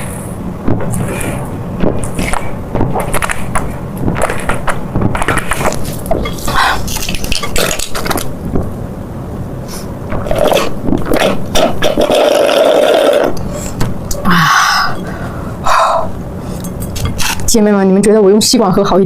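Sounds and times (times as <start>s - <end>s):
slurping drink through a straw: 10.3s - 13.4s.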